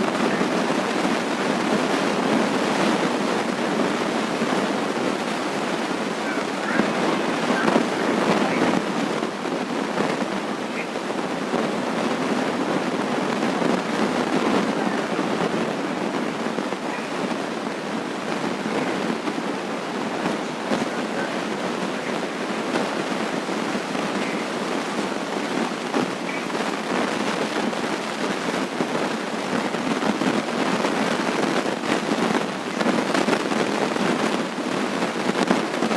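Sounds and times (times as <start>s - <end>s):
loud steady crackling: 0.0s - 35.9s.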